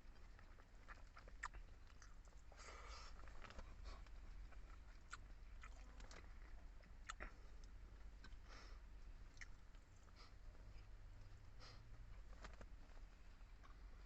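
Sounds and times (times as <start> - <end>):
person chewing: 0.0 - 8.6, 9.3 - 10.3
low steady hum: 0.0 - 14.0.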